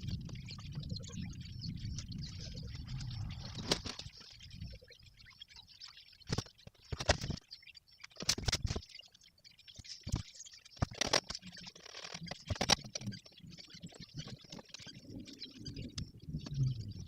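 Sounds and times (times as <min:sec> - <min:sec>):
sharp clicks and knocks: 0:08.0 - 0:08.9, 0:10.1 - 0:13.4.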